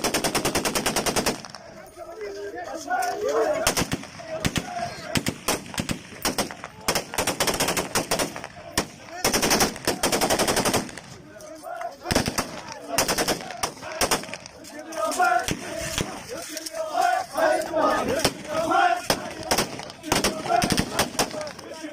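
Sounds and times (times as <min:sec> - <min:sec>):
rifle gunfire: 0:00.0 - 0:01.6, 0:03.6 - 0:11.2, 0:12.1 - 0:14.5, 0:18.2 - 0:21.6.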